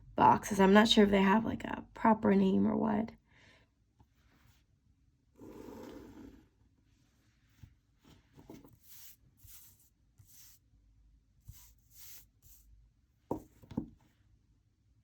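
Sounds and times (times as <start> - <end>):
pen scratching on paper: 8.5 - 10.6, 11.5 - 12.7.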